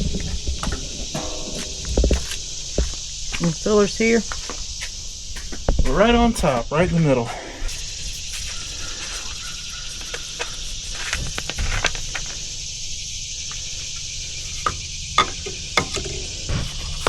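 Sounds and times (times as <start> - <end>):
high-pitched insect chorus: 0.0 - 17.0
handling clicks and knocks: 15.2 - 17.0.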